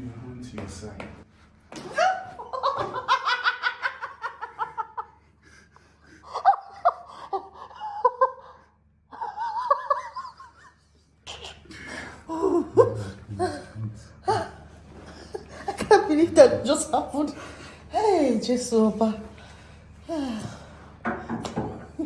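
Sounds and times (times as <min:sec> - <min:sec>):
person laughing hard: 0:06.2 - 0:10.8, 0:12.3 - 0:14.7.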